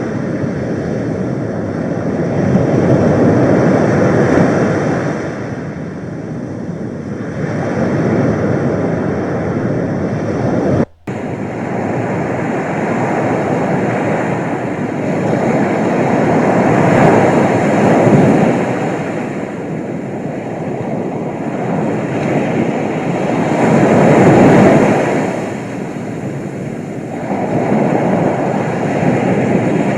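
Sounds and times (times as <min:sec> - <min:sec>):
sea waves washing onto shore: 0:11.0 - 0:29.9.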